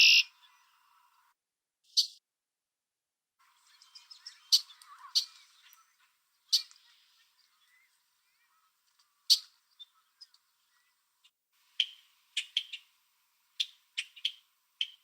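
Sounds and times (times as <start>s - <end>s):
blackbird sharp calls: 0.0s - 0.7s, 3.6s - 10.9s, 11.7s - 13.0s, 13.6s - 15.0s
faint bird chirps: 0.0s - 1.3s, 3.4s - 15.0s.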